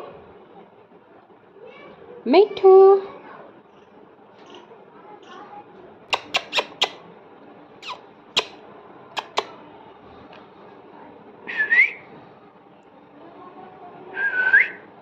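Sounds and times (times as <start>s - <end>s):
parrot clicking: 6.1s - 7.0s, 7.8s - 8.6s, 9.2s - 9.5s.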